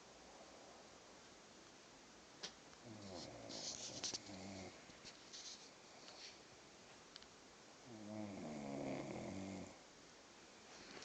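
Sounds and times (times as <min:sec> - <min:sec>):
long buzzing snore: 0:04.3 - 0:04.8, 0:07.9 - 0:09.8.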